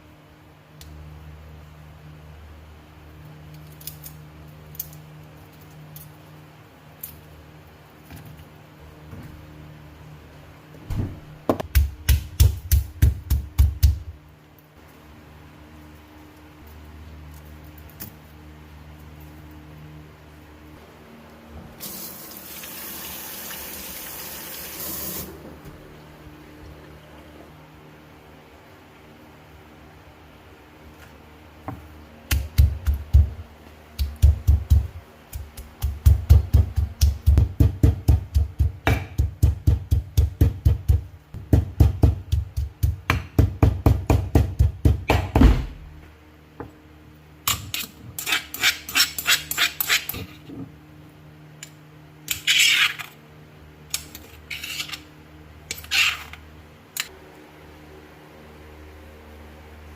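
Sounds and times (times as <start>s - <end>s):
knife chopping on cutting board: 34.0s - 45.8s.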